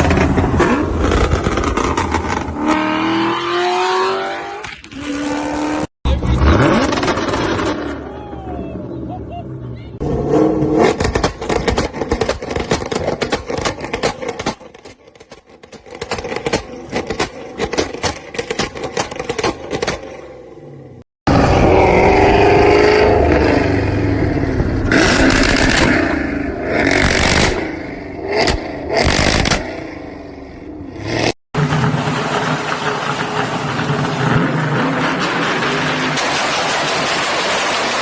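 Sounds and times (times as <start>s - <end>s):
exhaust popping and crackling: 0.0s - 2.6s, 10.8s - 20.2s, 31.6s - 38.0s
car engine revving: 0.0s - 8.1s.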